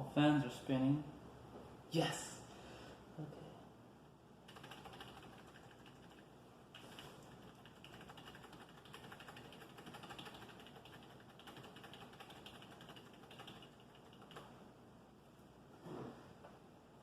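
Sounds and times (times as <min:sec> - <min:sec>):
computer keyboard clicking: 0:04.5 - 0:14.5.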